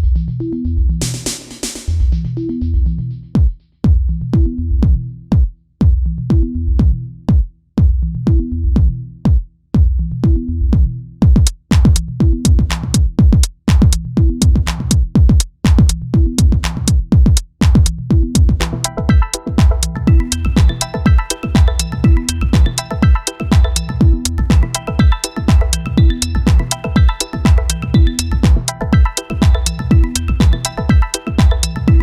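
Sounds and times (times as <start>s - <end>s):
electronic music with drum-machine beat: 1.0s - 3.6s, 4.4s - 5.5s, 8.3s - 9.4s, 10.2s - 32.0s.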